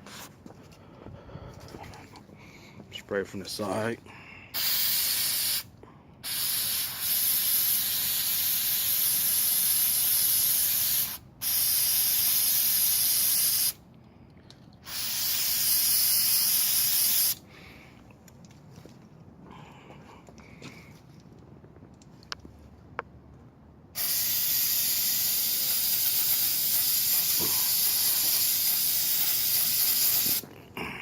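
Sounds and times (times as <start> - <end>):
aerosol can spraying: 4.6 - 13.8, 14.8 - 17.4, 24.0 - 30.4.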